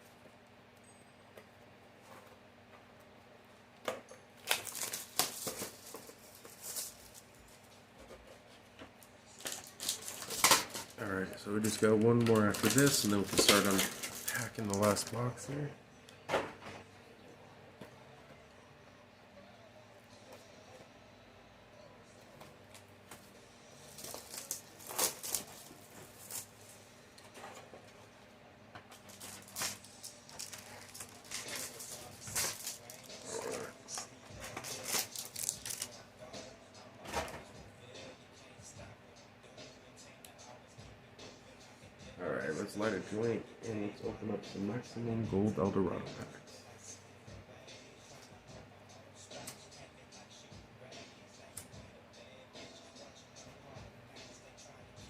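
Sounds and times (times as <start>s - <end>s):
cards rustling: 4.4s - 7.4s, 9.3s - 15.4s, 22.7s - 27.7s, 28.9s - 36.0s
foil packaging crinkling: 4.4s - 7.4s, 9.3s - 15.4s, 23.9s - 26.8s, 28.9s - 36.0s.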